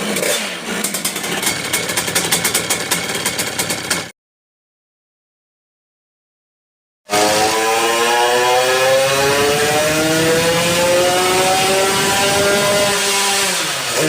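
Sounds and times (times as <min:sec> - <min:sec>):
two-stroke motorcycle engine revving: 0:00.0 - 0:04.1, 0:07.1 - 0:14.0.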